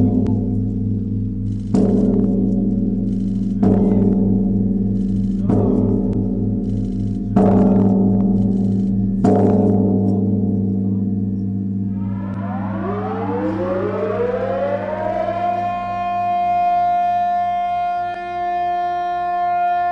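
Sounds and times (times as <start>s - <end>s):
deep bell tolling: 0.0s - 18.0s
air-raid siren winding up: 12.0s - 19.9s.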